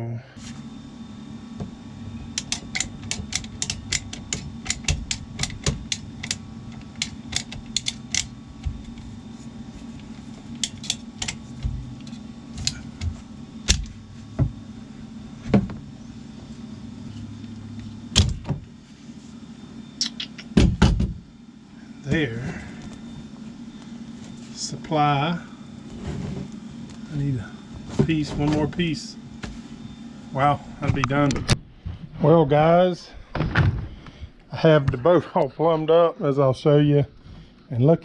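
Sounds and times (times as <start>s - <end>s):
steady low hum: 0.0s - 38.0s
clicks of plumbing fittings and tools: 2.4s - 9.0s.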